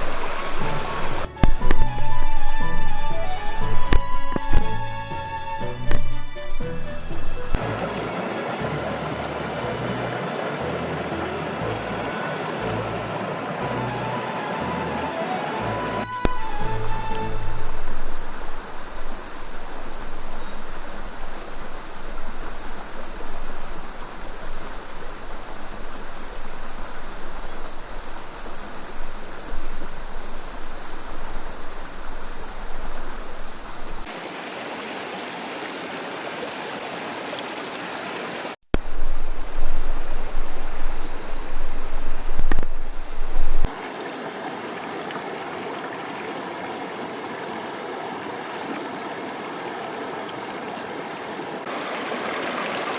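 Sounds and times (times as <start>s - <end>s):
rushing river water: 0.0s - 52.9s.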